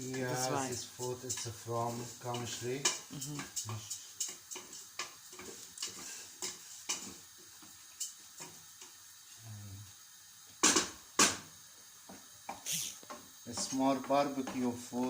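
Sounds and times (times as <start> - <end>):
utensil tapping and scraping pot: 0.0 - 9.0, 12.1 - 15.0.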